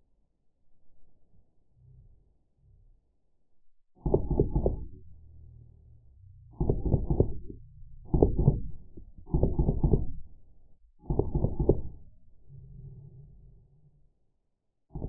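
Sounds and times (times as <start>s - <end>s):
slowed bb gun bursts: 4.0s - 5.0s, 6.6s - 10.4s, 11.0s - 12.1s.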